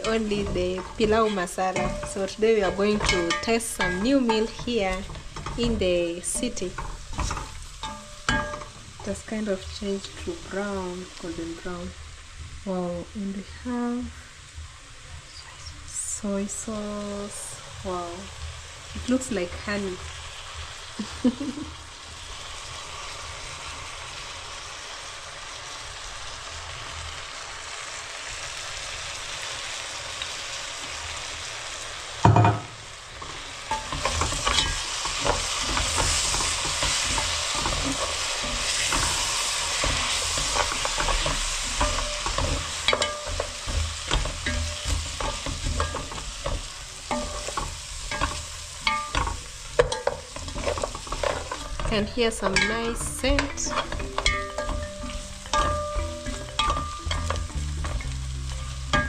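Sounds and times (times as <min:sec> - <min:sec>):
utensil scraping a pan: 0:00.0 - 0:09.3, 0:33.2 - 0:59.0
food sizzling in a pan: 0:00.0 - 0:59.0.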